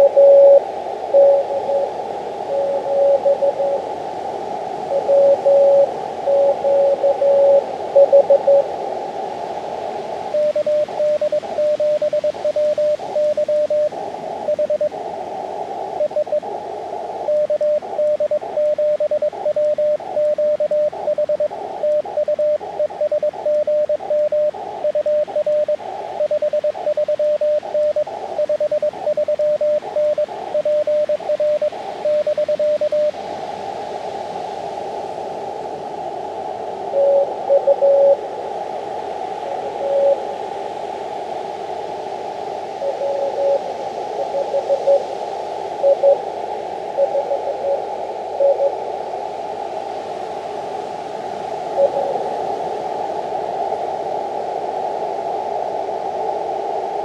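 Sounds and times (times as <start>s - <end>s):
morse code tones: 0.0s - 0.6s, 1.2s - 1.9s, 5.0s - 8.6s, 37.0s - 38.2s, 45.8s - 46.2s
receiver hiss: 0.0s - 57.0s.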